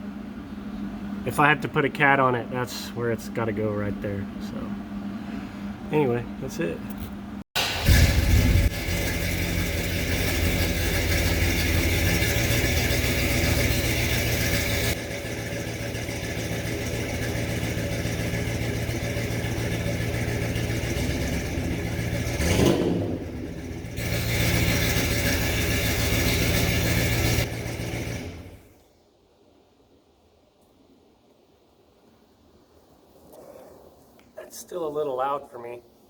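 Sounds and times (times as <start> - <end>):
car engine revving: 7.6 - 28.7
car engine idling: 7.6 - 28.8.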